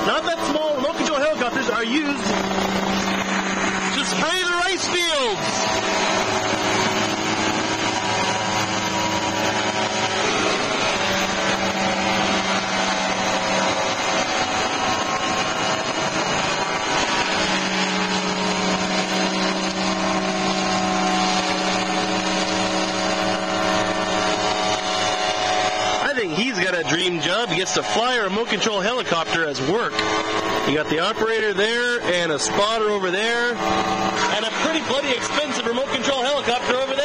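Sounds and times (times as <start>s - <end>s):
helicopter engine and rotors droning: 0.0s - 37.0s.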